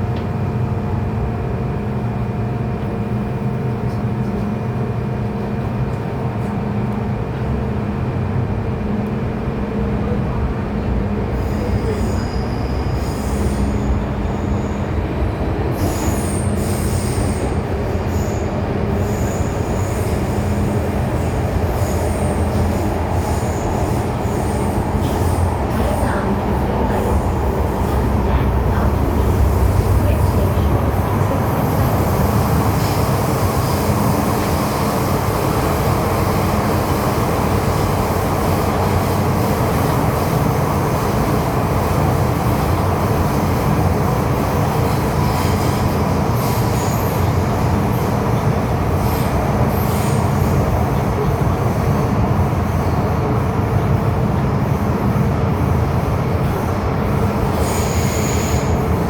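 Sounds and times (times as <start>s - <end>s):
train wheels rumbling on track: 0.0s - 59.0s.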